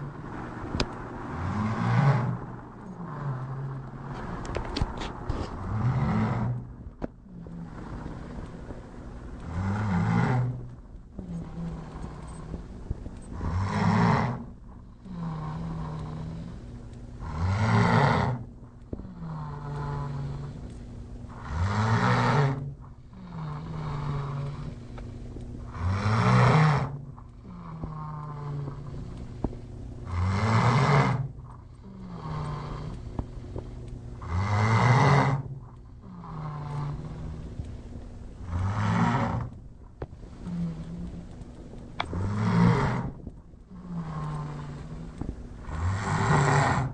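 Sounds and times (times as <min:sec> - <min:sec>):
soft pitched breathing: 0:00.0 - 0:34.6, 0:35.5 - 0:46.9
person snoring loudly: 0:05.4 - 0:06.6, 0:09.4 - 0:12.6, 0:13.4 - 0:16.6, 0:17.2 - 0:20.6, 0:21.3 - 0:24.9, 0:25.6 - 0:33.2, 0:34.2 - 0:37.5, 0:38.4 - 0:39.6, 0:42.0 - 0:46.9.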